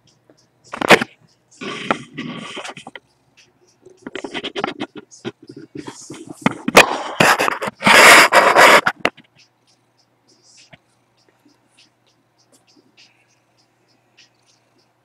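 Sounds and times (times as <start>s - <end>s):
scratching and scraping on microphone: 0.7s - 3.1s, 3.8s - 9.5s.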